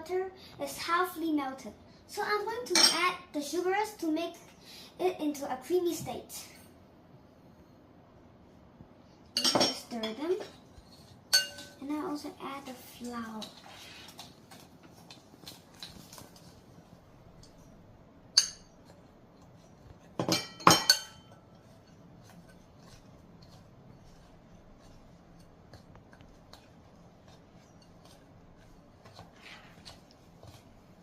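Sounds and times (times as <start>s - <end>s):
spoon clinking against bowl: 11.3s - 11.8s, 18.3s - 18.8s, 20.2s - 21.5s.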